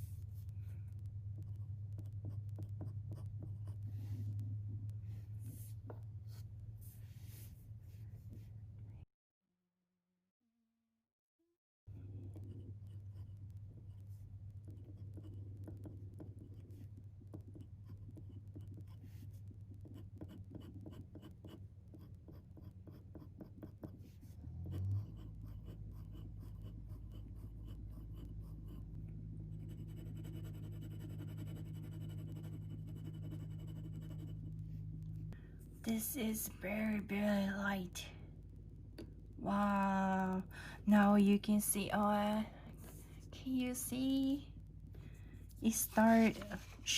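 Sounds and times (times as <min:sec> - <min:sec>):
low electrical hum: 0:00.0 - 0:09.1, 0:11.9 - 0:46.9
pen scratching on paper: 0:01.4 - 0:04.4, 0:12.2 - 0:28.9, 0:29.5 - 0:34.4.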